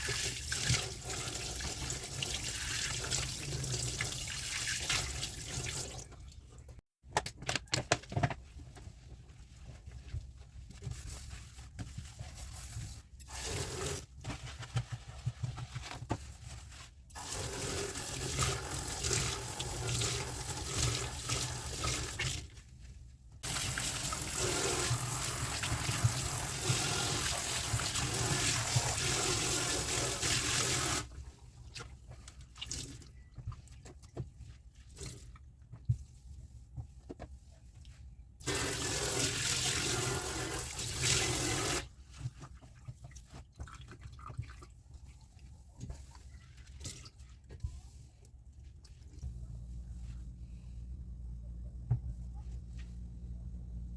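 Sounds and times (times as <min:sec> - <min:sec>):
tap water running onto dishes: 0:23.4 - 0:31.1, 0:38.4 - 0:41.8.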